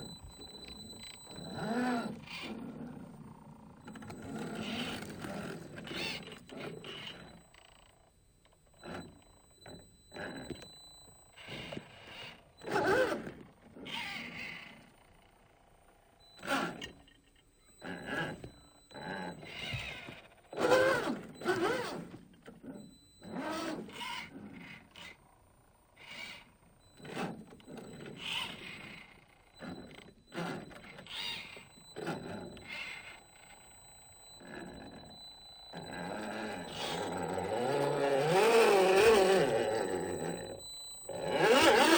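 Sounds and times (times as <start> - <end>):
electric motor whining: 0.0 - 7.4, 26.0 - 41.9.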